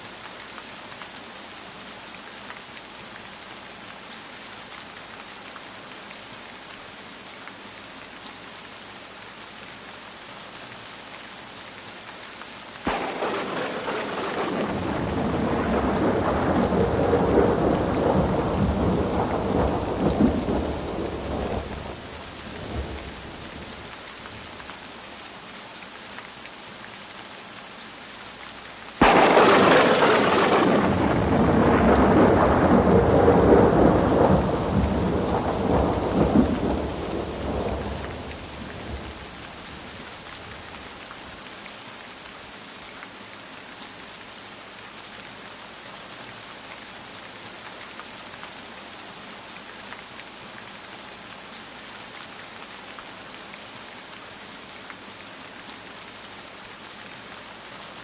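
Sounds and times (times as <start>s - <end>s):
steady rain: 0.0s - 58.0s
rolling thunder: 12.9s - 23.9s, 29.0s - 40.7s.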